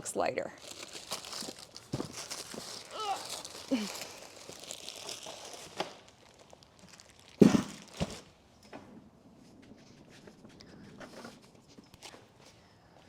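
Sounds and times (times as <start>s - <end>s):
wrapping rustling and crinkling: 0.2s - 8.4s
loud thud: 7.4s - 8.2s.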